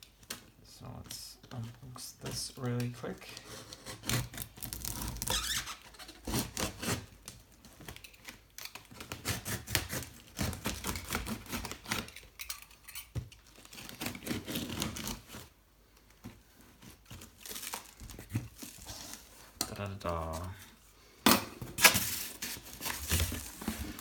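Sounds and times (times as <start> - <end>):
cardboard box being opened: 21.8 - 24.0.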